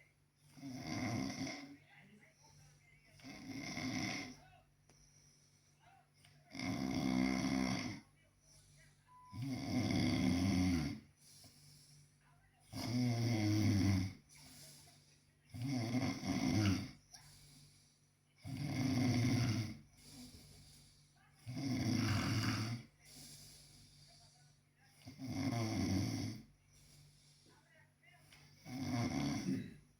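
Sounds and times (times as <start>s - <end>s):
quiet breathing: 0.0s - 29.9s
person snoring: 0.5s - 1.8s, 3.2s - 4.4s, 6.5s - 8.1s, 9.3s - 11.1s, 12.7s - 14.3s, 15.5s - 17.0s, 18.4s - 20.8s, 21.4s - 23.8s, 25.0s - 26.5s, 28.6s - 29.9s.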